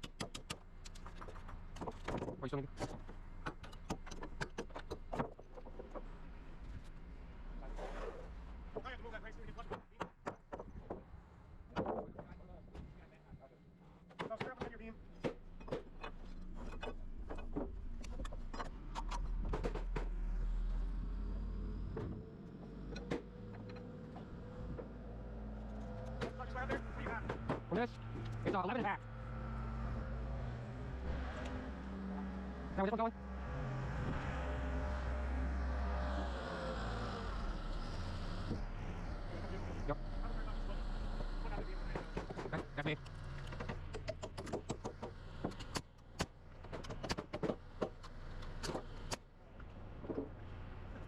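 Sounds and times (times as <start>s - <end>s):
hammer striking nails into wood: 0.0s - 0.6s
engine running: 15.2s - 51.0s
low machinery rumble: 20.1s - 43.9s.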